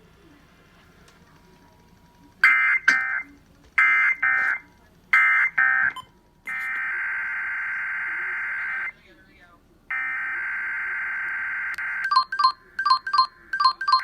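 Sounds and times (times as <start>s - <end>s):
steady attention tone: 1.4s - 9.0s.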